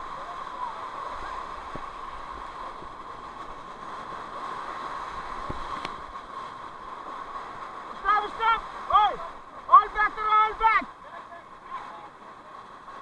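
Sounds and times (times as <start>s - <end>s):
rushing river whitewater: 0.0s - 13.0s.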